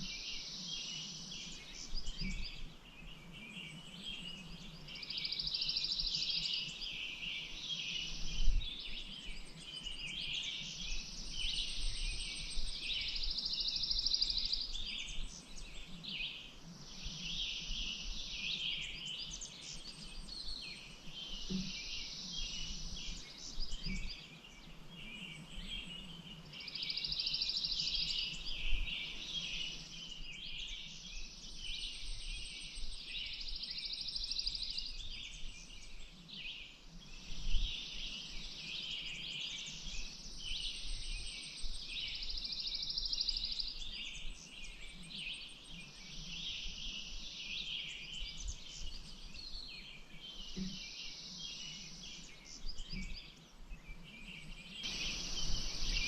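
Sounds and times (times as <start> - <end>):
birds chirping and singing: 0.0 - 56.0
high buzzing bird trills: 54.8 - 56.0.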